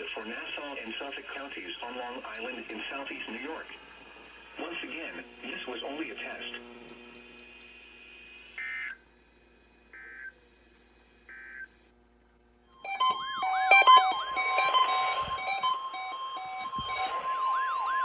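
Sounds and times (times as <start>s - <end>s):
electronic alarm beeping: 12.8s - 18.0s
siren-like sweeps: 12.8s - 18.0s
warbling digital data bursts: 12.8s - 18.0s.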